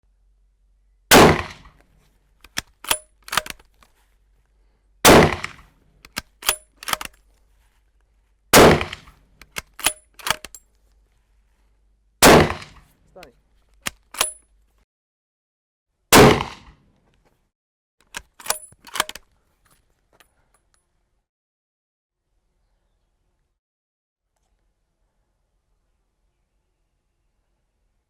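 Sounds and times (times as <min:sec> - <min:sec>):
rifle shots: 0:01.1 - 0:01.7, 0:05.1 - 0:05.7, 0:08.6 - 0:09.1, 0:12.2 - 0:12.8, 0:16.2 - 0:16.7
rifle bolt metallic clicks: 0:02.4 - 0:03.9, 0:05.1 - 0:07.2, 0:08.6 - 0:10.6, 0:13.8 - 0:14.4, 0:18.0 - 0:19.3.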